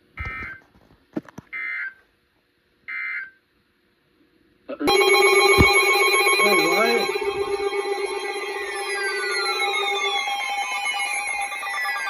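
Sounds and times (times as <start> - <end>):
loud multi-tone alert sound: 4.9 - 12.0
raspy digital tone bursts: 4.9 - 12.0.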